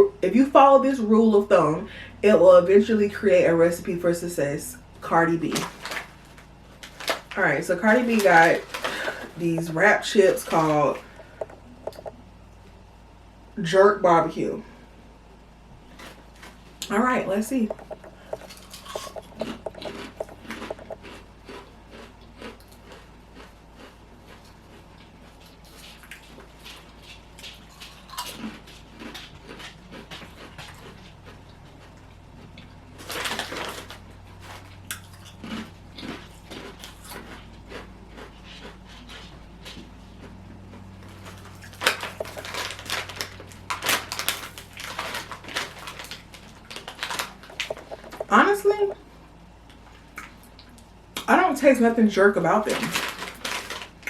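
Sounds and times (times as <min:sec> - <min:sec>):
potato chip bag crinkling: 0:05.5 - 0:12.1, 0:17.5 - 0:23.1, 0:32.9 - 0:37.8, 0:41.0 - 0:49.0, 0:52.5 - 0:54.0.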